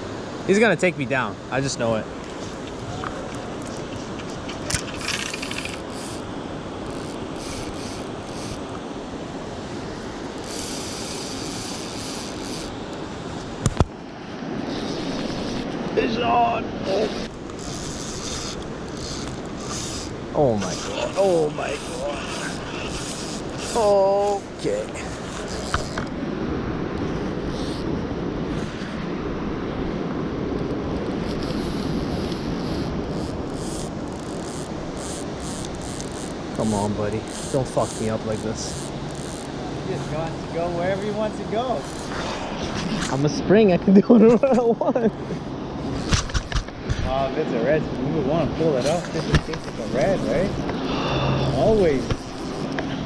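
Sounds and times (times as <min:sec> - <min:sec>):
river water rushing: 0:00.0 - 0:37.6, 0:48.0 - 0:53.0
fishing reel drag buzzing: 0:03.4 - 0:13.7, 0:14.6 - 0:15.8, 0:16.8 - 0:26.2, 0:27.4 - 0:27.9, 0:31.2 - 0:43.2, 0:48.6 - 0:53.0.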